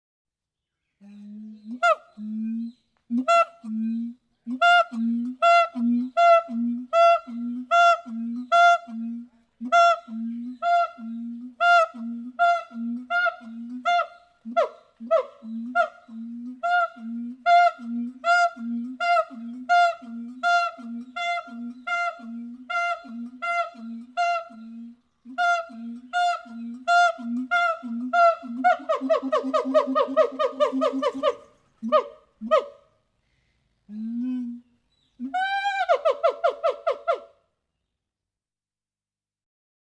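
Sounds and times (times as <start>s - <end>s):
monkey calling: 25.4s - 32.8s.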